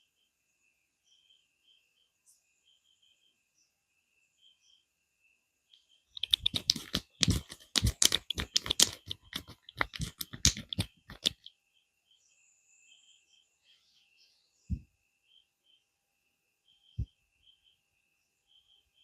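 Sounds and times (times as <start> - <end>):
hands slapping and tapping on head: 6.2 - 11.5.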